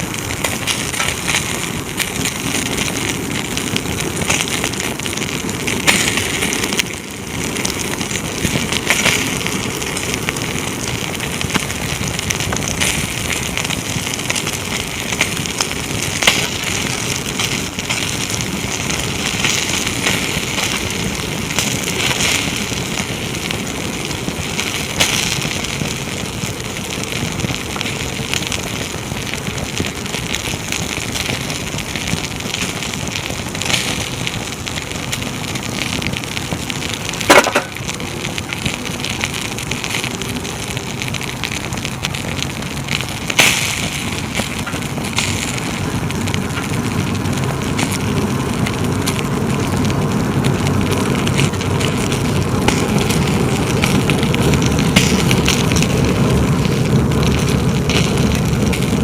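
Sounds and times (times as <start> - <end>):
bonfire crackling and popping: 0.0 - 59.0
sharp loud pop: 37.2 - 37.8.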